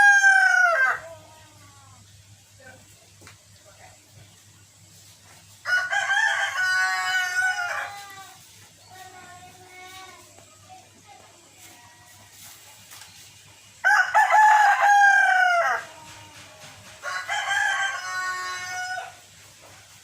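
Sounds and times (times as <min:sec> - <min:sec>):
rooster crowing: 0:00.0 - 0:01.2, 0:05.6 - 0:08.2, 0:13.8 - 0:19.3.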